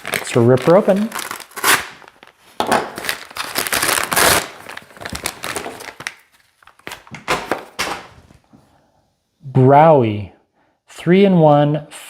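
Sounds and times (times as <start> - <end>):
package being torn open: 0.0 - 8.2
packaging crinkling and rustling: 0.0 - 8.5.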